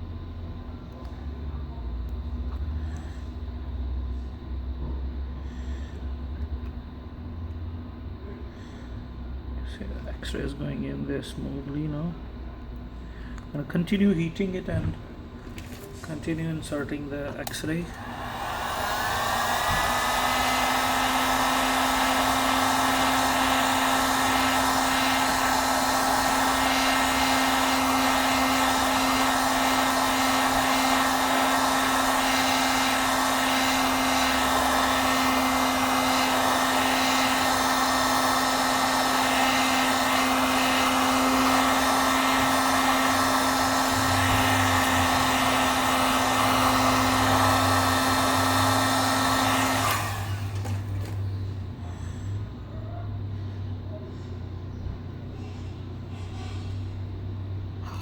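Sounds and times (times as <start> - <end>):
hot-air gun motor whine: 2.1 - 52.6
rush of blown air: 17.9 - 50.6.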